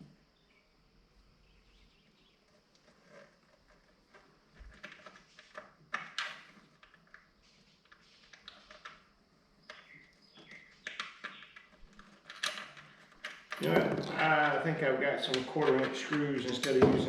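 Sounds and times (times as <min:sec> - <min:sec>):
metal parts and tools clicking: 0:10.8 - 0:17.0.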